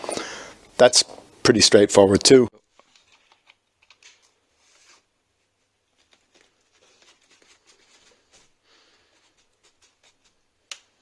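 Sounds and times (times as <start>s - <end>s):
rustles: 4.1s - 11.0s.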